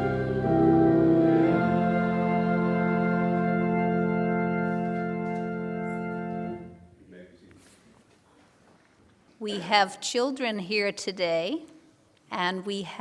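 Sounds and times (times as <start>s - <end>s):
church organ chord: 0.0s - 6.9s.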